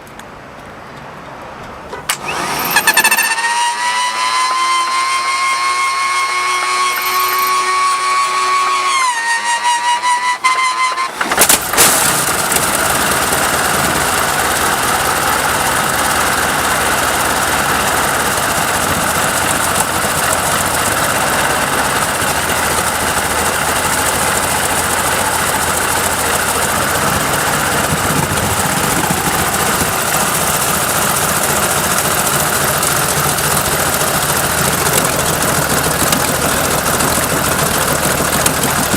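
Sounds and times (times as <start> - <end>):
engine starter whine: 1.9 - 38.9
large engine running loudly: 2.1 - 10.2, 11.6 - 38.9.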